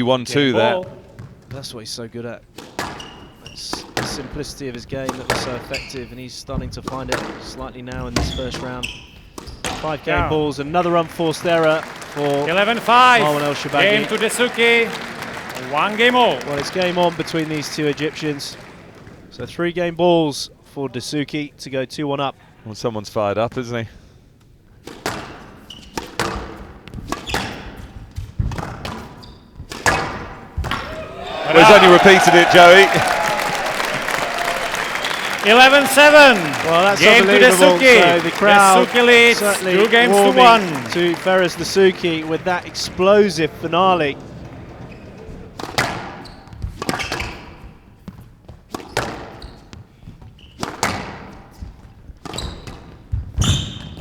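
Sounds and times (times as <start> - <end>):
shoes squeaking on court floor: 0.6 - 1.6, 2.6 - 19.3, 24.8 - 43.0, 43.6 - 54.0
squash ball hitting rackets and walls: 2.5 - 10.8, 24.8 - 31.0, 45.4 - 54.0.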